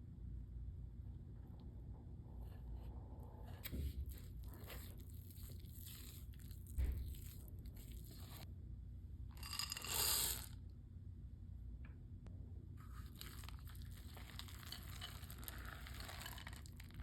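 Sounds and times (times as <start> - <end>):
light scraping and crunching: 3.4 - 8.5, 12.8 - 17.0.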